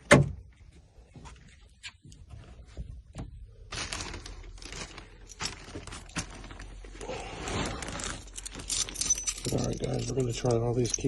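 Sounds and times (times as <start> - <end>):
handling clicks and rustling: 1.4 - 11.0.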